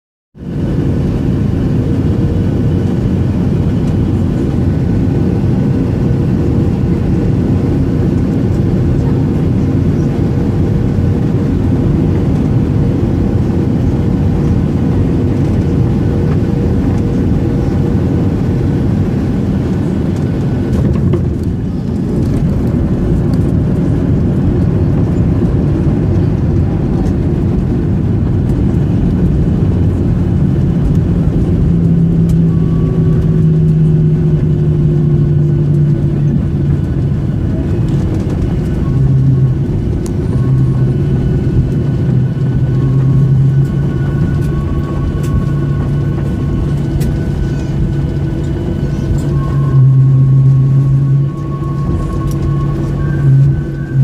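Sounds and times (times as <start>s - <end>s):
airplane cabin engine roar: 0.4s - 54.0s.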